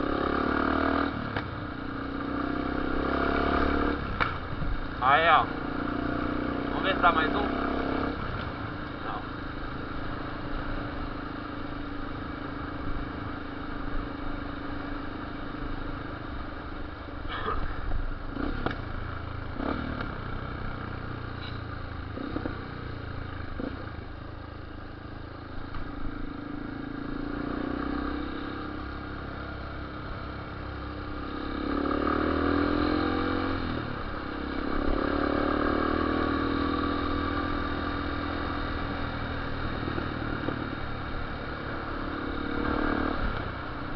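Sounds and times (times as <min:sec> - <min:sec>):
motorcycle engine revving: 0:00.0 - 0:43.9
exhaust pops: 0:18.5 - 0:18.8.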